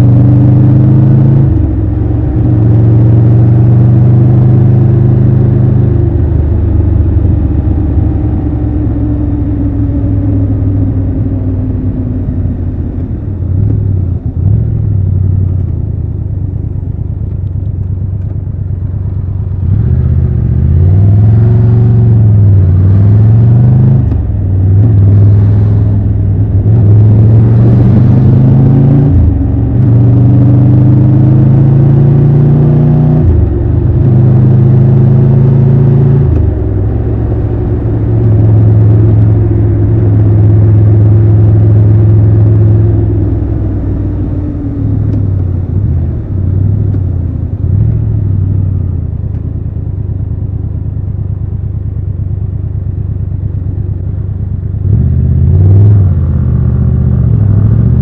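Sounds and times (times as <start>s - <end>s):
motorcycle engine accelerating: 0.0s - 58.0s.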